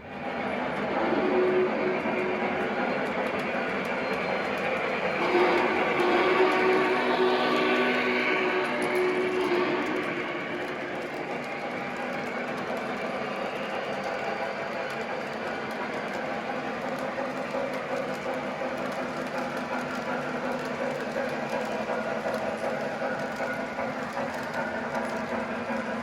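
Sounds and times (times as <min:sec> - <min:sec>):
model train running on rails: 0:00.0 - 0:26.0.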